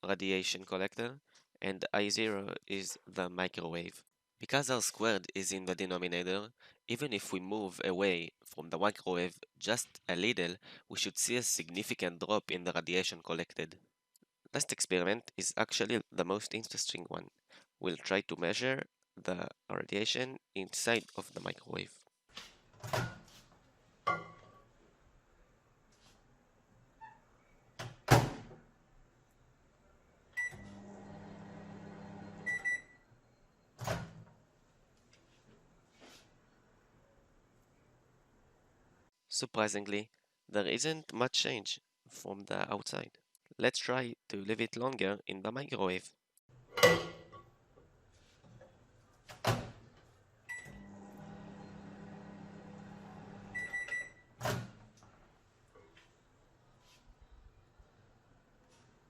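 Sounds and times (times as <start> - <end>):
microwave oven humming: 30.4 - 32.8, 50.5 - 53.9
microwave beeps: 30.4 - 33.7, 50.5 - 52.3, 53.4 - 54.3.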